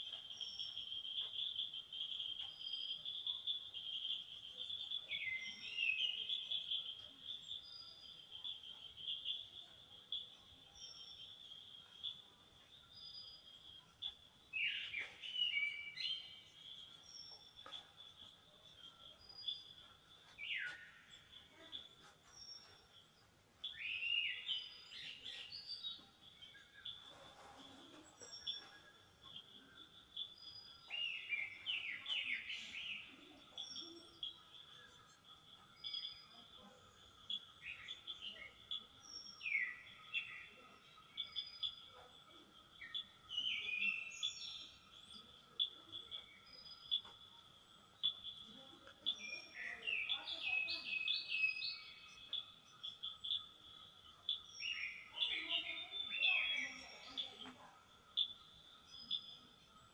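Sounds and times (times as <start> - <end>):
insect drone: 23.6 - 59.9
birds chirping and calling: 30.4 - 41.9, 48.0 - 57.6.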